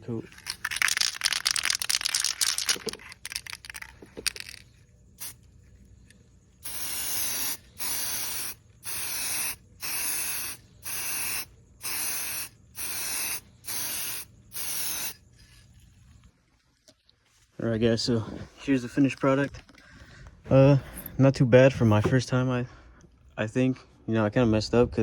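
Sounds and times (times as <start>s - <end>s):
spray paint hissing bursts: 5.2s - 5.4s, 6.6s - 15.2s.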